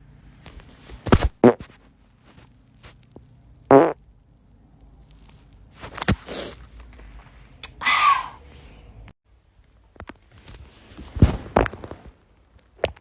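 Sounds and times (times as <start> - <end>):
short pitched fart: 1.1 - 1.7, 3.7 - 4.0.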